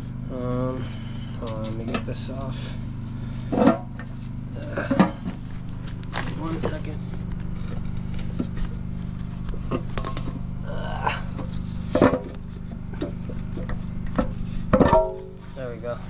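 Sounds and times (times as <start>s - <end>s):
steady low hum: 0.0s - 16.0s
loud metal clank: 14.7s - 15.4s.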